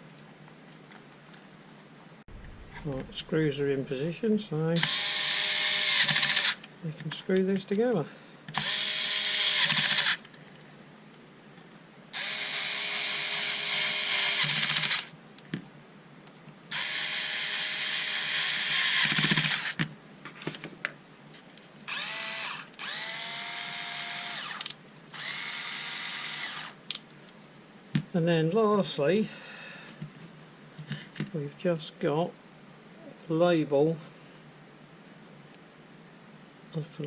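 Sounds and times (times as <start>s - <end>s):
electric screwdriver whirring: 4.8s - 6.6s, 8.5s - 10.2s, 12.2s - 15.1s, 16.7s - 19.8s, 21.9s - 26.8s.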